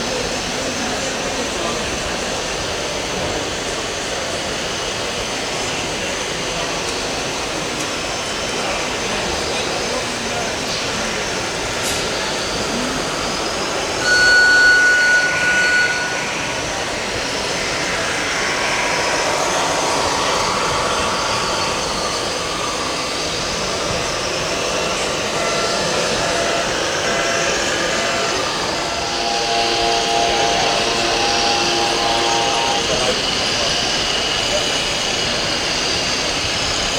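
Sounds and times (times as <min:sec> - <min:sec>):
crowd chatter: 0:00.0 - 0:36.9
loud electronic beep: 0:14.0 - 0:21.5, 0:26.1 - 0:33.1.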